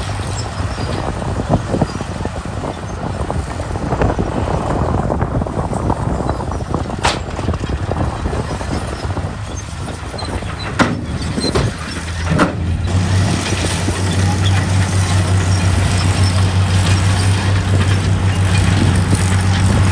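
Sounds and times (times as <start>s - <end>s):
heavy diesel machinery rumbling: 0.0s - 19.9s
crunching rattle: 5.6s - 19.9s
sharp metallic clanks: 7.0s - 7.8s.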